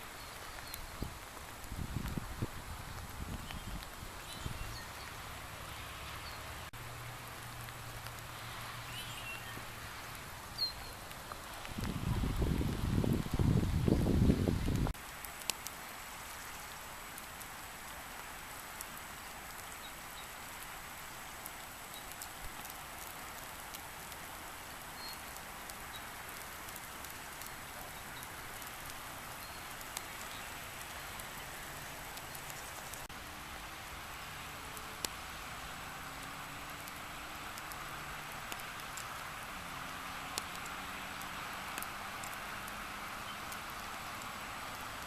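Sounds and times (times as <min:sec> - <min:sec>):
rain drops ticking: 0:00.0 - 0:45.0
rain falling: 0:00.0 - 0:45.0.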